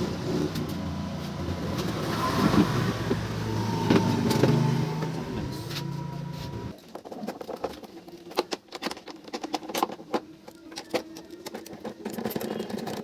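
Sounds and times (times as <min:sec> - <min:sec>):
scooter parts clicking and knocking: 0:06.7 - 0:13.0.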